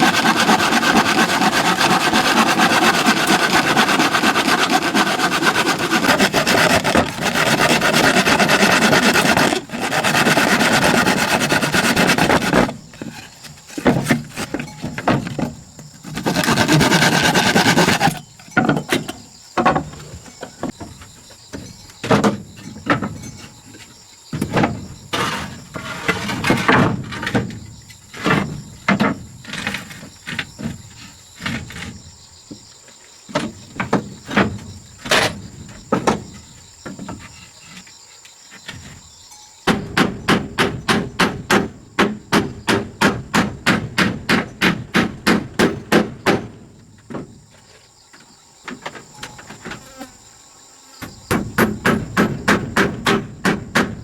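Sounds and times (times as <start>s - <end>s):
hammering: 0.0s - 12.8s, 39.7s - 46.6s, 51.2s - 54.0s.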